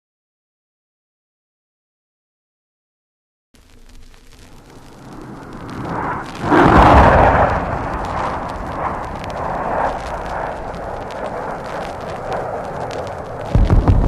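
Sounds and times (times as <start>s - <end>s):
long rumble: 3.6s - 14.0s
explosion blast: 4.6s - 14.0s.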